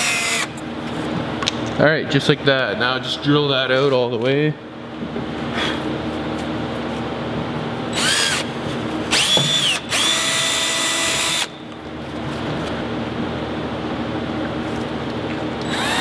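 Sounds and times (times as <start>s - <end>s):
electric drill whining: 0.0s - 0.5s, 7.9s - 11.5s, 15.6s - 16.0s.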